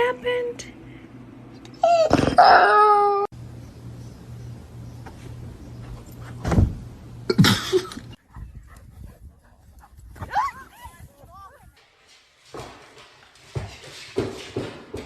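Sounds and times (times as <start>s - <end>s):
dog whimpering: 1.8s - 3.3s.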